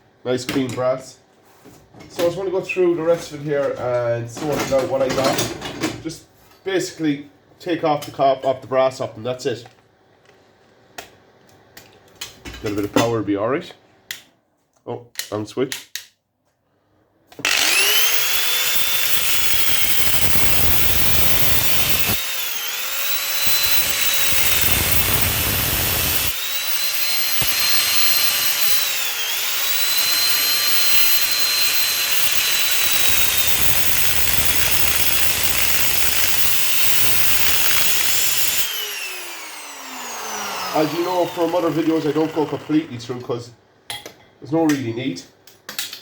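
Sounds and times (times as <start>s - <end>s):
power tool cutting copper pipe: 17.4s - 43.0s
power tool whining: 17.4s - 43.1s.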